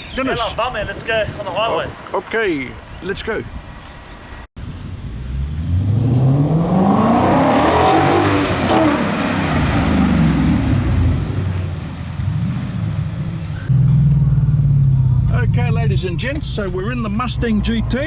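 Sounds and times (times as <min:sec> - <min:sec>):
car engine revving: 0:04.8 - 0:18.0.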